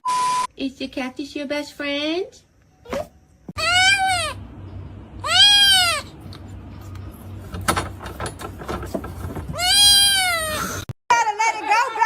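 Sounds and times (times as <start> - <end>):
cat meowing loudly: 5.2 - 6.1, 9.6 - 10.7.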